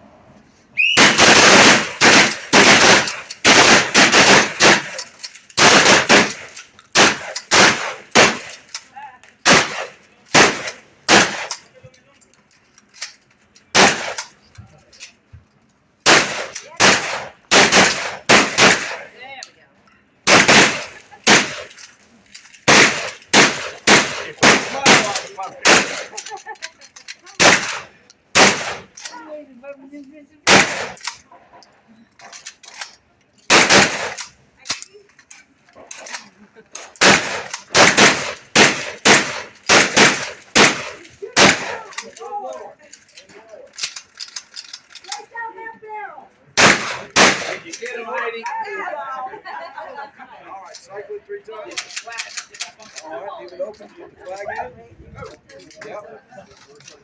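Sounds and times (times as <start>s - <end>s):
shotgun blasts: 0.8s - 8.6s, 9.4s - 11.6s, 13.7s - 14.3s, 16.0s - 19.1s, 20.3s - 21.7s, 22.6s - 26.1s, 27.4s - 29.0s, 30.4s - 31.1s, 33.5s - 34.2s, 36.8s - 41.9s, 46.6s - 47.7s.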